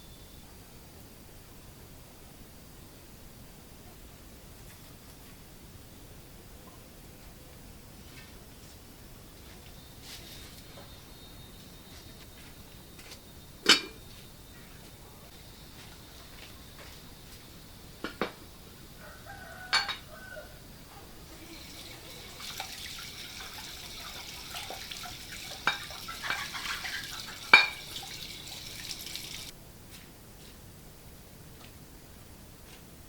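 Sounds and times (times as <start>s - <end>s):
water running: 21.2s - 29.5s.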